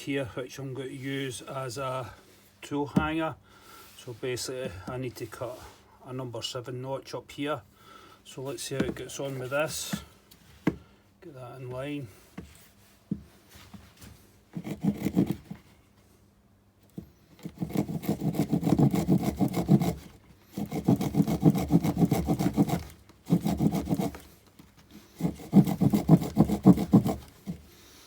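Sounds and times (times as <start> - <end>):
saw cutting green wood: 14.6 - 15.5, 17.4 - 24.3, 25.0 - 27.7.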